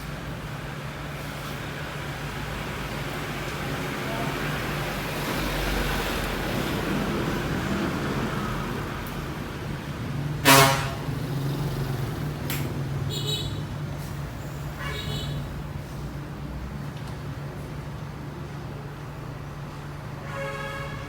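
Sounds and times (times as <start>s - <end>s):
vehicle engines running: 0.0s - 20.2s
vehicle horn honk: 10.4s - 11.1s, 14.8s - 15.4s, 20.2s - 21.0s.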